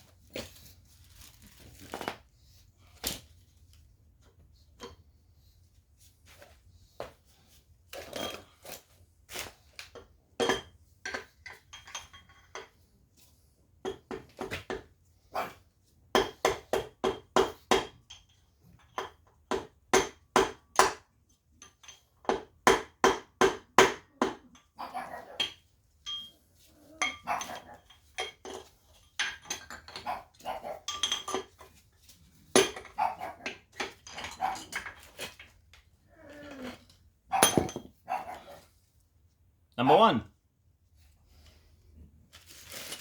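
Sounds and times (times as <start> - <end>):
small dog barking: 38.1 - 38.6.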